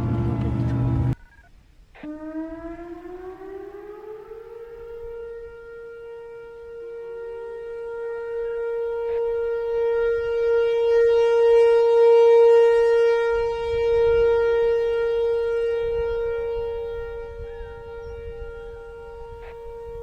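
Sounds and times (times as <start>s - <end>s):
higher siren tone: 0.0s - 20.0s
tornado siren wailing: 0.0s - 20.0s.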